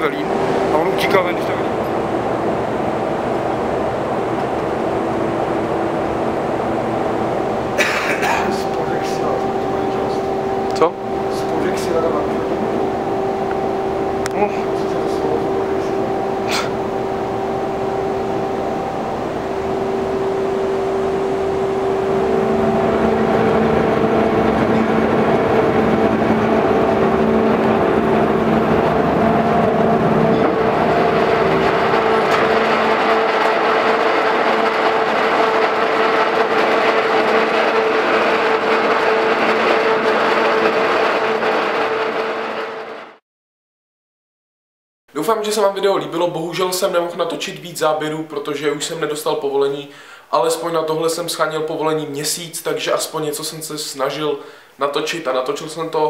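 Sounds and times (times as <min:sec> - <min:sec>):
factory machinery drone: 0:00.0 - 0:43.2
machinery humming tones: 0:00.0 - 0:43.2.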